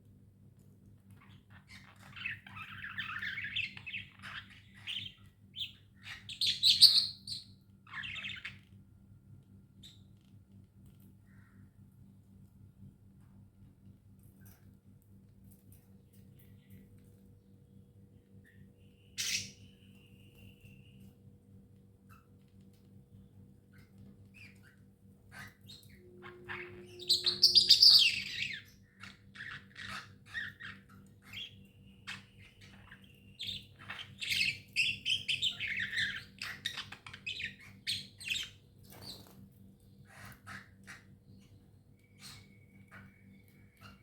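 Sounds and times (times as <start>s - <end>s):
budgerigars chirping and chattering: 1.5s - 8.6s, 19.2s - 19.7s, 24.4s - 39.4s, 40.0s - 41.5s, 42.1s - 44.0s.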